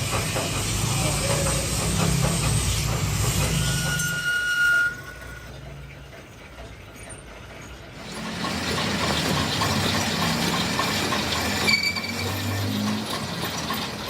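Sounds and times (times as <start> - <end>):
thin high squeal: 3.4 - 5.7, 11.3 - 13.2.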